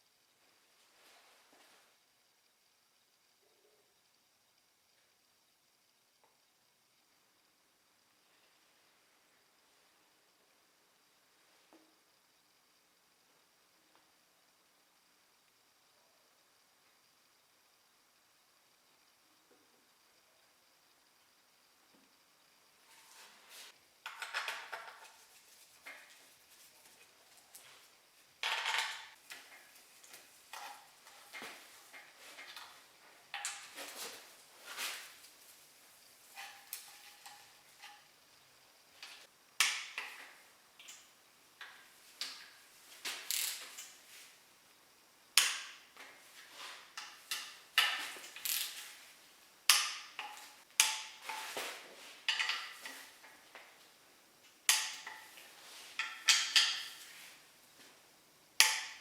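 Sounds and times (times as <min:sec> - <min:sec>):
tools and metal parts clinking: 0:43.1 - 0:44.0, 0:47.0 - 0:49.0, 0:52.3 - 0:53.2, 0:56.0 - 0:57.1.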